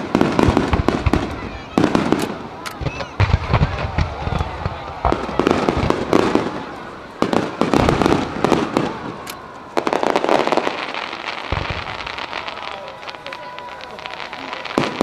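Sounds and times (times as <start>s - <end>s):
firework booms: 0.0s - 15.0s
firework crackling: 0.0s - 15.0s.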